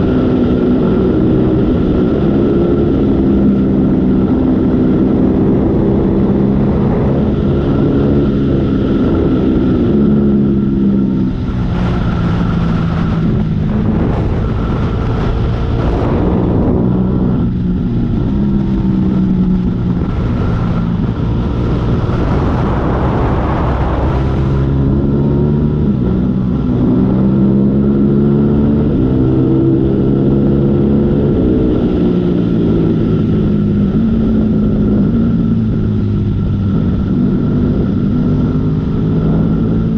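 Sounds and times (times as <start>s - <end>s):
motorcycle engine accelerating: 0.0s - 39.9s
wind on microphone: 0.0s - 39.9s.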